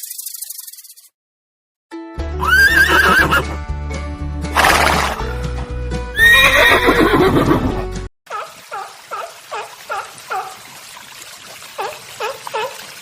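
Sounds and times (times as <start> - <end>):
horse neighing: 2.4 - 3.6, 4.6 - 5.4, 6.2 - 7.8.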